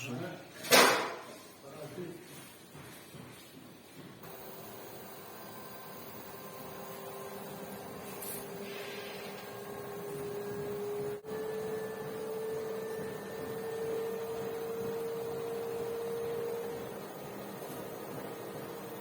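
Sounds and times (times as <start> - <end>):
washing machine whine: 4.2 - 19.0.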